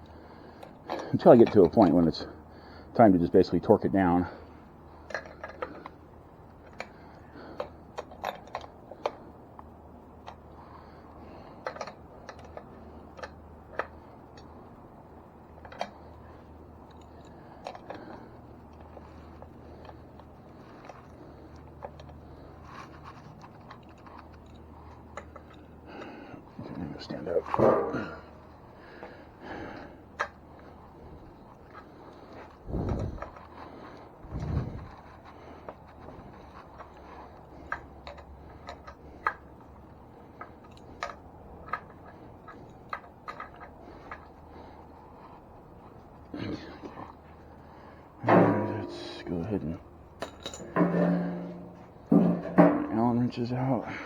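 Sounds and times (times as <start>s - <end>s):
steady low hum: 0.0s - 54.0s
hand tools clicking and tapping: 11.6s - 14.5s, 16.8s - 30.8s, 34.9s - 45.0s, 50.2s - 53.0s
wrench clicking and scraping: 16.9s - 26.2s.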